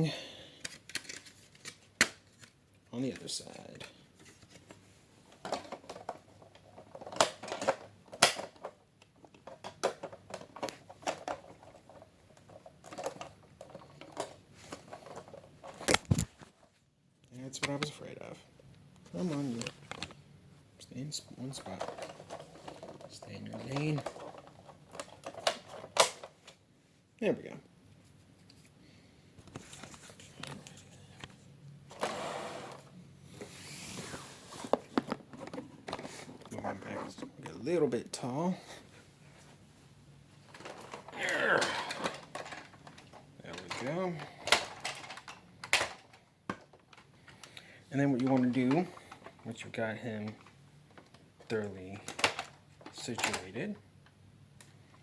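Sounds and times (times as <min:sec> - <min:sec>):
plastic toy parts clicking: 0:05.4 - 0:14.4.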